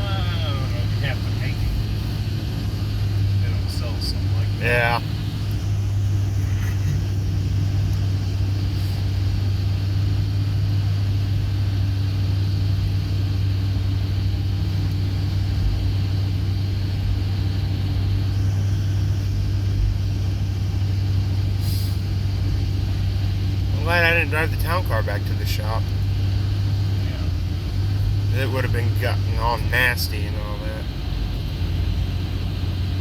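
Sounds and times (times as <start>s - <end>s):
tyres hissing on road: 0.0s - 13.0s, 20.5s - 33.0s
car engine and road hum: 0.0s - 33.0s.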